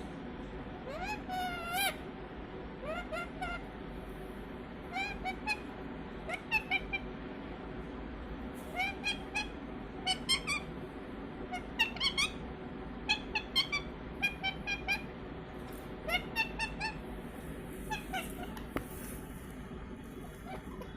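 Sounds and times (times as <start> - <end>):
parrot chirping: 0.8 - 2.0, 2.8 - 3.7, 4.9 - 7.0, 8.7 - 10.7, 11.5 - 12.4, 13.0 - 15.1, 16.0 - 17.0, 17.8 - 19.1, 20.0 - 20.9.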